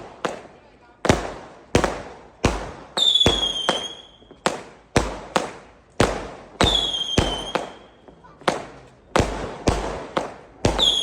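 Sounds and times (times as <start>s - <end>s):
fireworks bangs: 0.0s - 11.0s
fireworks whistles: 3.0s - 4.4s, 6.6s - 8.0s, 10.7s - 11.0s.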